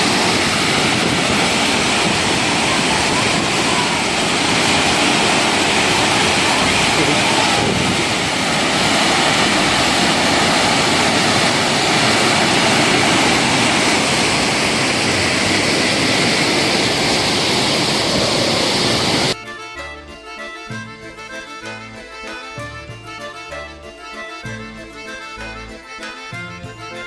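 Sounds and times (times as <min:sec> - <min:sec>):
waterfall rushing: 0:00.0 - 0:19.4
music: 0:19.4 - 0:27.0.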